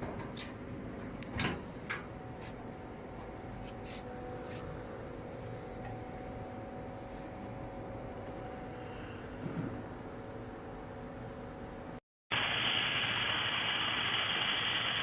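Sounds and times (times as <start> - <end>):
laser welding machine humming: 12.3 - 15.0.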